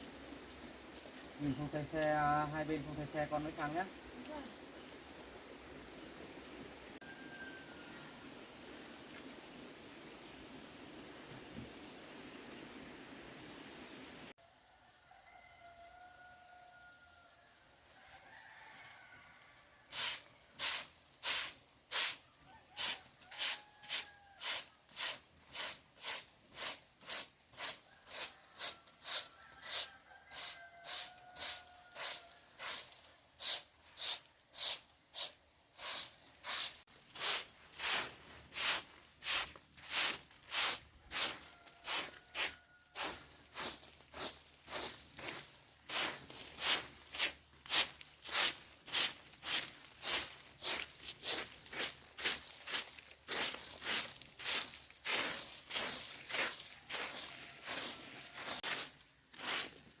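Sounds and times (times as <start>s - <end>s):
rooster crowing faintly: 7.0s - 8.5s, 14.4s - 20.4s, 22.2s - 24.8s, 27.7s - 32.7s, 38.0s - 48.0s, 54.4s - 59.6s.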